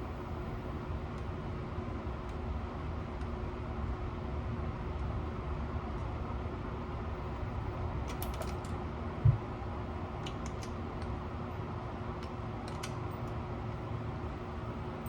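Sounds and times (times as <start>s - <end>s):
dull thump: 9.2s - 9.5s.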